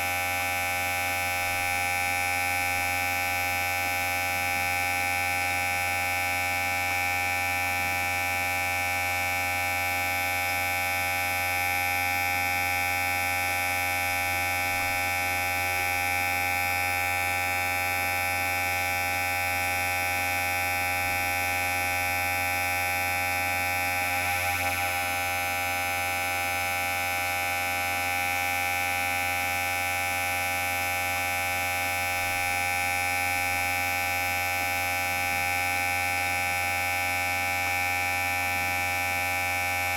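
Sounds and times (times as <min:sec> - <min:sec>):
electric hair clipper buzzing: 0:11.6 - 0:28.5, 0:31.9 - 0:35.8.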